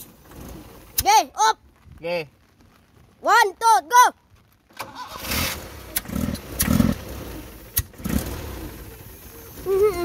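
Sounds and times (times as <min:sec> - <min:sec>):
engine cranking on starter: 0:04.7 - 0:09.8.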